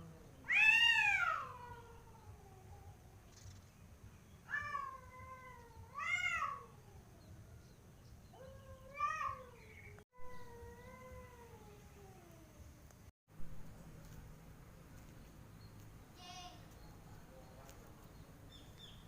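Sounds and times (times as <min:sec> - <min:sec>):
cats yowling: 0:00.5 - 0:03.0, 0:04.5 - 0:07.3, 0:08.3 - 0:09.6.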